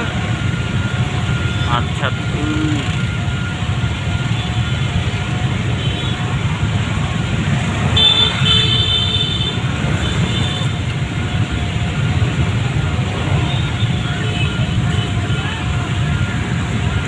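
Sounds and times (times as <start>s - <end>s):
road traffic engine rumble: 0.0s - 17.0s
vehicle horn tooting: 8.0s - 10.8s.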